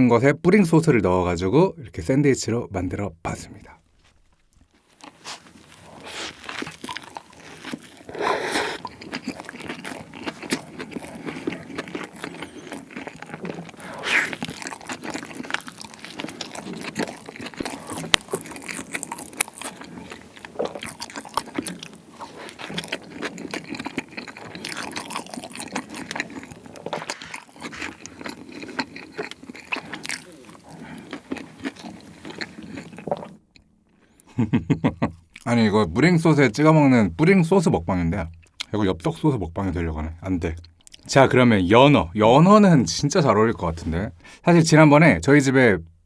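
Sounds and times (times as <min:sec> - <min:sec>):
biting and chewing sandwich: 0:04.0 - 0:33.7
wet mouth sounds: 0:05.0 - 0:33.4.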